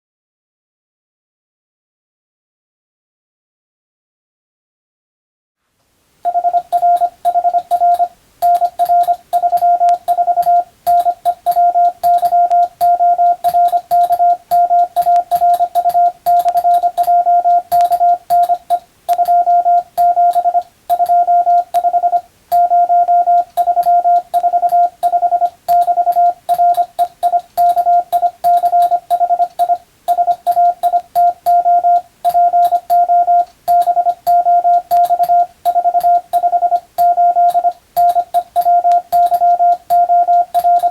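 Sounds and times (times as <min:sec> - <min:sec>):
morse code tone: 0:06.3 - 0:40.9.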